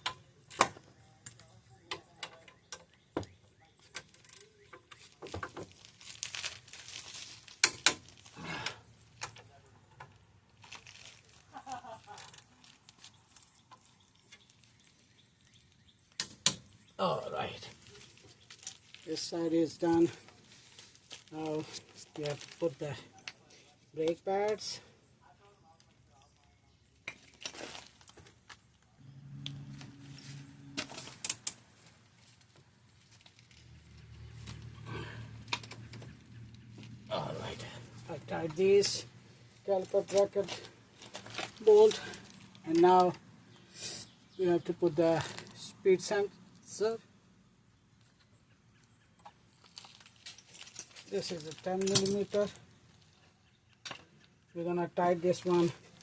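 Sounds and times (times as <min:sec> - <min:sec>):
rustling handling noises: 0:03.9 - 0:08.4, 0:09.2 - 0:15.8, 0:17.7 - 0:24.7, 0:29.6 - 0:43.2, 0:49.5 - 0:53.2
low hum: 0:29.0 - 0:31.2
metal parts clicking and clinking: 0:49.6 - 0:53.1.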